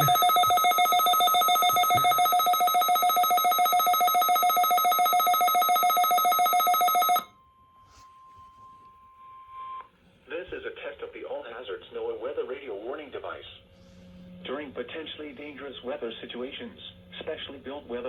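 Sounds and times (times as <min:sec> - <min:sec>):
pulsing electronic alarm ringing: 0:00.0 - 0:07.3.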